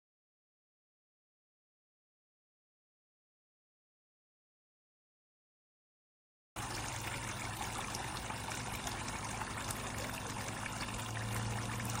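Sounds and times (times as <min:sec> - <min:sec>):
steady low hum: 0:06.6 - 0:12.0
water trickling and splashing: 0:06.6 - 0:12.0.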